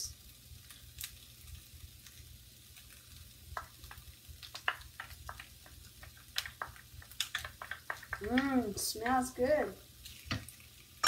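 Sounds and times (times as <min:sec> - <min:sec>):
food sizzling in a pan: 0:00.0 - 0:11.0.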